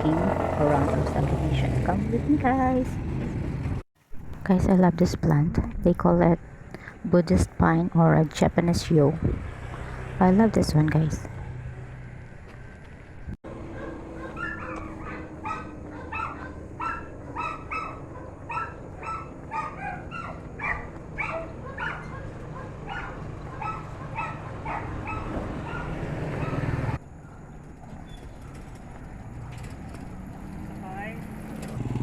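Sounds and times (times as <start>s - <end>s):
dog barking: 13.7s - 27.5s.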